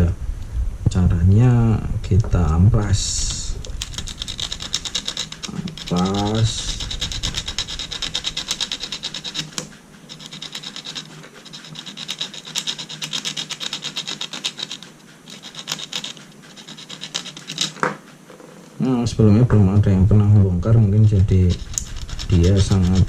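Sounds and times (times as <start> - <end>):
sandpaper rubbing back and forth: 3.0 - 17.8, 20.7 - 23.0.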